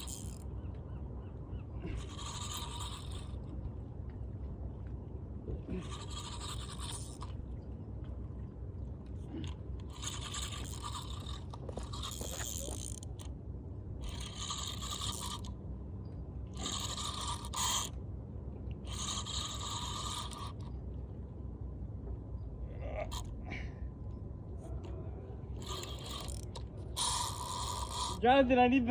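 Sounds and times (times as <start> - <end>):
fishing reel whirring: 0.0 - 0.6, 1.8 - 3.8, 5.7 - 7.6, 9.4 - 13.4, 14.0 - 15.6, 16.5 - 18.0, 18.8 - 20.8, 23.1 - 23.3, 25.5 - 28.4
steady low rumble: 0.0 - 28.9.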